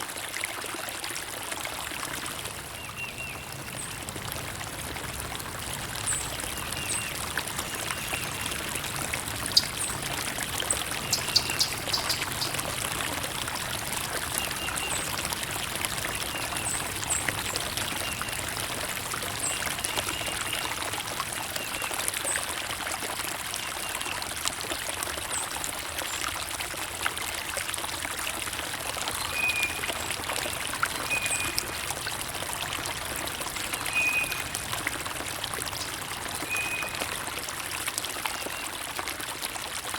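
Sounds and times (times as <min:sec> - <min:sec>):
water trickling and pouring: 0:00.0 - 0:39.9
high bird chirps: 0:11.0 - 0:12.6.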